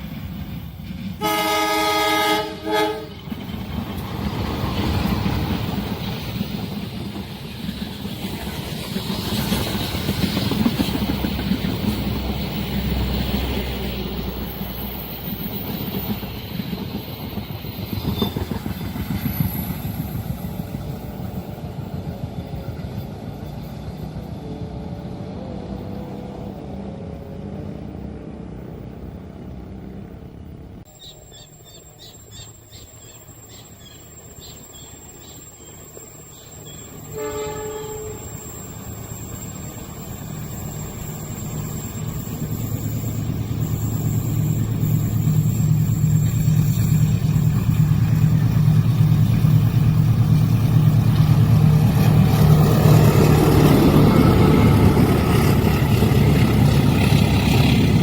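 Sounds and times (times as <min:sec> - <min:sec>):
motorcycles and cars passing: 0:24.8 - 0:30.8.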